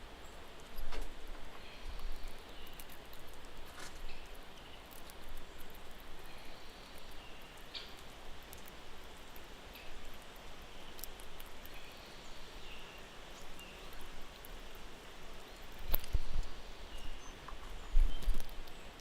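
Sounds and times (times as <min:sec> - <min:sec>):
steady hiss: 0:00.0 - 0:19.0
small clicks and rustles: 0:00.6 - 0:06.3, 0:15.5 - 0:19.0
low wind rumble: 0:14.0 - 0:19.0.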